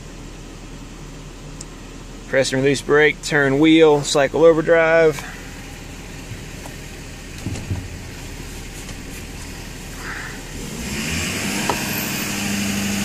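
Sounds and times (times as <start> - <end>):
diesel engine idling: 0.0 - 13.0
light engine knocks: 7.4 - 8.1.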